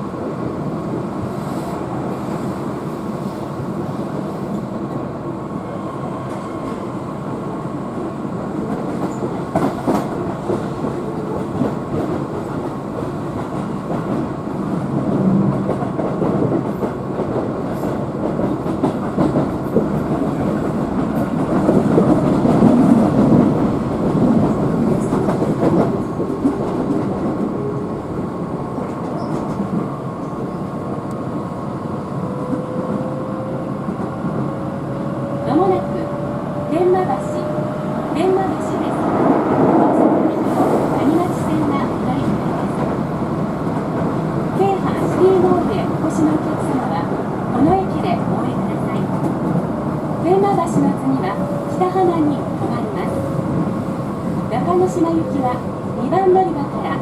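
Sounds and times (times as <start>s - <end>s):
train wheels rumbling on rail: 0.0s - 57.0s
train clatter: 8.5s - 31.2s.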